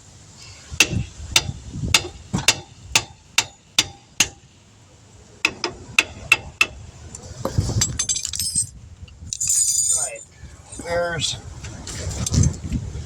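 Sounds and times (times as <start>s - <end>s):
hammer striking metal: 0.8s - 4.4s
metallic clatter of parts: 7.4s - 10.2s.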